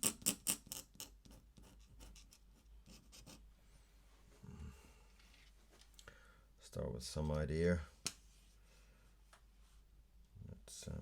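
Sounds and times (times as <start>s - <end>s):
pen scratching on paper: 1.2s - 3.4s.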